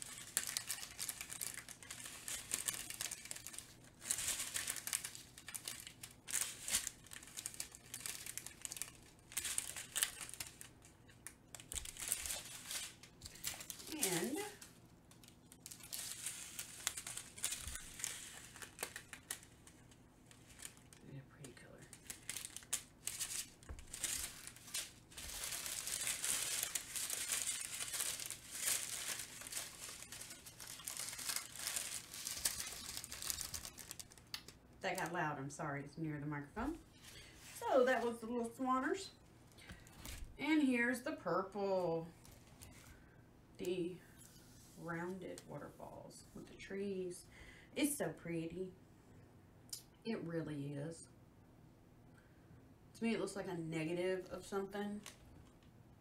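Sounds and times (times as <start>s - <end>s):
plastic bags crinkling: 0.0s - 35.2s.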